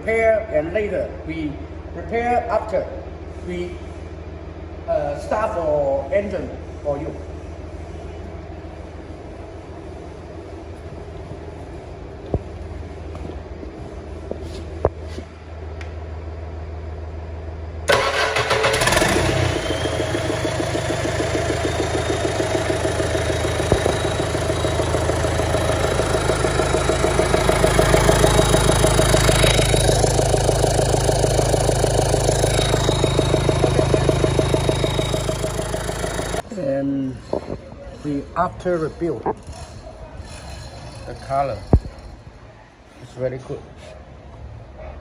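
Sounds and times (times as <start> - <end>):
diesel engine starting and running: 7.4 - 42.9.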